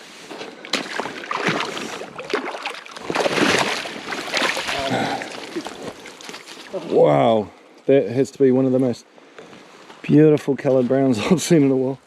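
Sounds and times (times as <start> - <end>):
water splashing and sloshing: 0.0 - 7.0.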